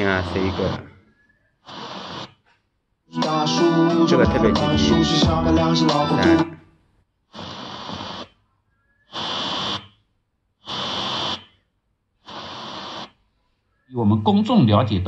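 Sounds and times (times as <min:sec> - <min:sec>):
radio static hiss: 0:00.0 - 0:02.6, 0:07.3 - 0:10.0, 0:10.6 - 0:13.9.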